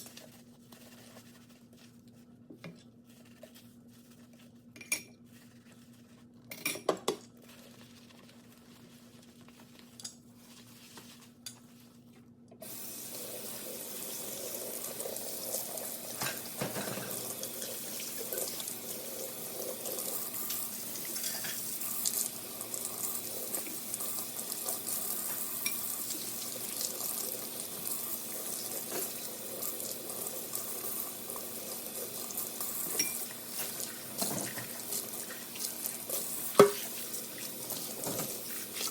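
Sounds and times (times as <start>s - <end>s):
water running into sink: 12.6s - 38.9s
dishes clattering: 16.1s - 17.3s.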